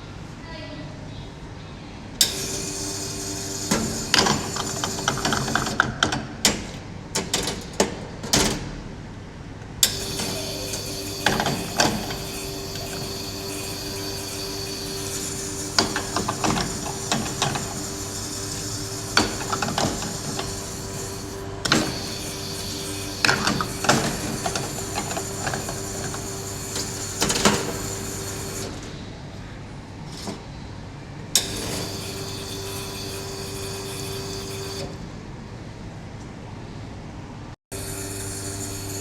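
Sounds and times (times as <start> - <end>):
espresso machine humming: 2.2 - 6.0, 9.8 - 28.6, 31.4 - 34.8, 37.8 - 39.0.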